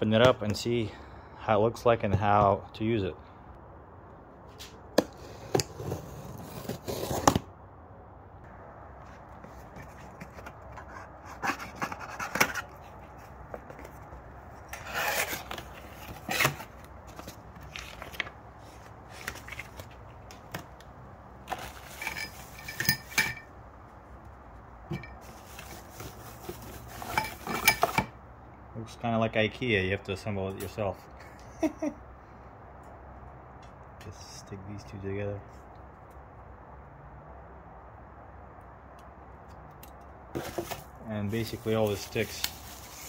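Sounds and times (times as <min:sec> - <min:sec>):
knocks rustles and scrapes: 0:09.0 - 0:20.8, 0:21.4 - 0:23.5, 0:24.8 - 0:28.2, 0:40.3 - 0:43.0
metal pole sections clinking: 0:21.5 - 0:23.5, 0:24.9 - 0:25.3.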